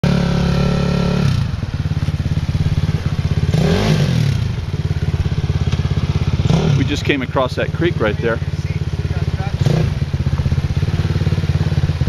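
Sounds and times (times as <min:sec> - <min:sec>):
dirt bike engine chugging: 0:00.0 - 0:12.0.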